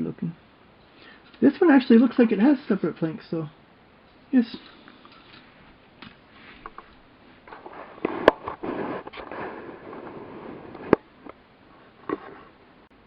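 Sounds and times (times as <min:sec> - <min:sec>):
plastic parts crackly rustling: 0:04.2 - 0:11.0.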